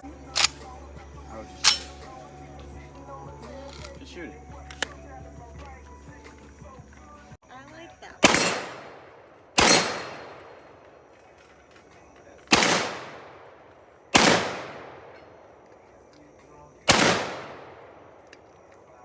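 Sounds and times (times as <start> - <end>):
rifle shots with echo: 0.0 - 0.8, 1.6 - 2.2, 8.2 - 16.1, 16.8 - 18.8.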